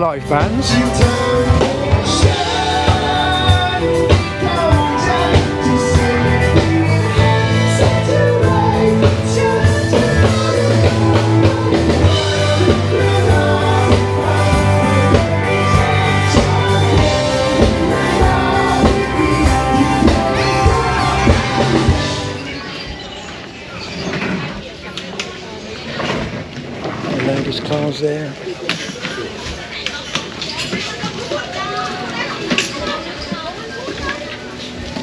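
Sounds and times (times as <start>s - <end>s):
bass guitar: 0.0s - 22.5s
steady drum beat: 0.0s - 22.5s
electric guitar: 0.0s - 22.6s
person singing: 0.2s - 22.5s.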